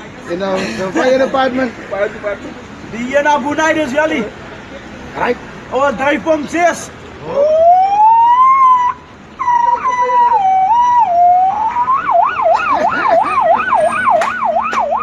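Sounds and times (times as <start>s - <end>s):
man imitating a siren: 7.2s - 15.0s.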